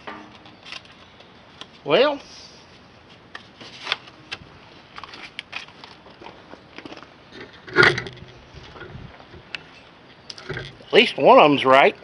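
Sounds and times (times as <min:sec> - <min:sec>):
loud handling noise: 0:07.3 - 0:10.9.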